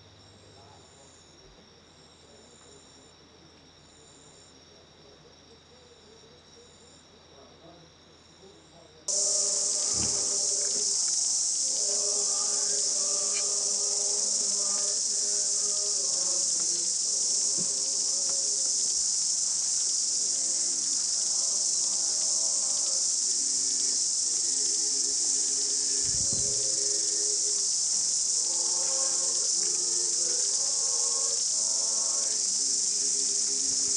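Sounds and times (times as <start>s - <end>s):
cicadas chorus: 6.0s - 33.9s
faint choir singing: 9.1s - 33.9s.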